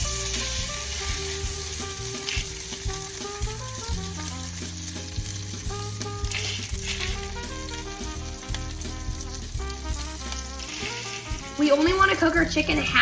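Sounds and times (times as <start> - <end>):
background music with bass line: 0.0 - 13.0
chicken sizzling in oil: 0.0 - 13.0.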